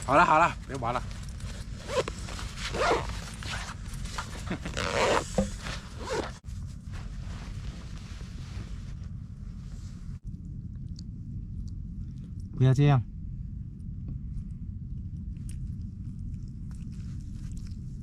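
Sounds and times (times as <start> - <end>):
fabric rustling and scuffling: 0.0 - 10.1.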